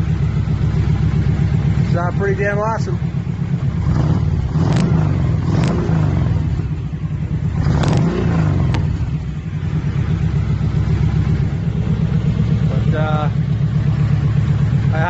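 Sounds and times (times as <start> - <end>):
motorcycle engine rumbling: 0.0 - 15.0.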